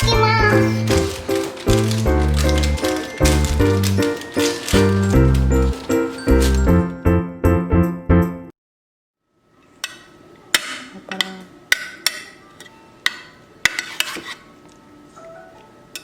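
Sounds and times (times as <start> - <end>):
music: 0.0 - 8.5, 15.2 - 16.0
hard objects knocking and clicking: 0.5 - 6.8.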